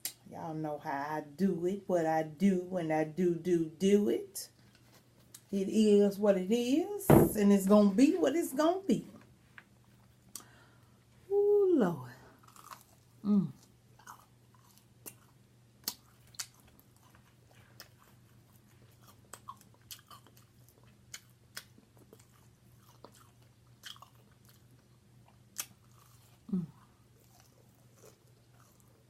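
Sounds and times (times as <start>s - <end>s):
chewing and crunching food: 12.3s - 29.0s.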